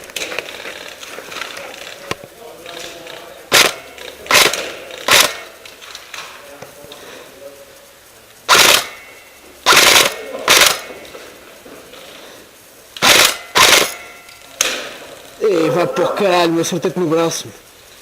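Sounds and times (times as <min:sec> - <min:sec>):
airsoft rifle firing bursts: 0:03.5 - 0:05.6, 0:08.5 - 0:09.0, 0:09.6 - 0:11.0, 0:13.0 - 0:14.9.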